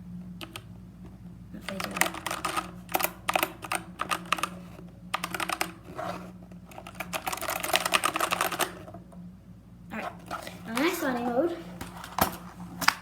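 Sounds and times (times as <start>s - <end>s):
mechanical keyboard typing: 1.7s - 8.9s.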